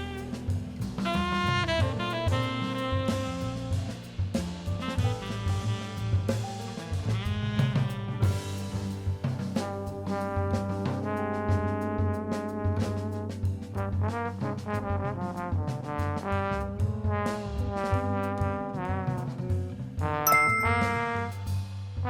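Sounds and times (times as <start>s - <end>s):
horn melody with vibrato: 0.0s - 4.0s, 20.3s - 21.4s
drums: 0.0s - 22.0s.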